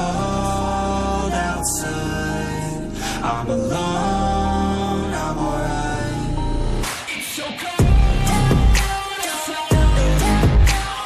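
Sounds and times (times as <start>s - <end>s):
pop hip-hop beat: 0.0s - 11.0s
heavy bass hit: 7.8s - 8.9s, 9.8s - 10.7s.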